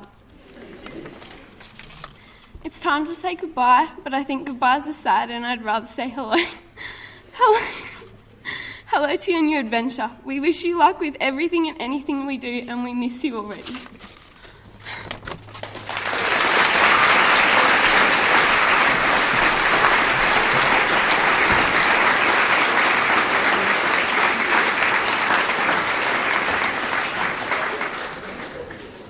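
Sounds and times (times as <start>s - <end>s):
audience applauding: 14.9s - 29.0s.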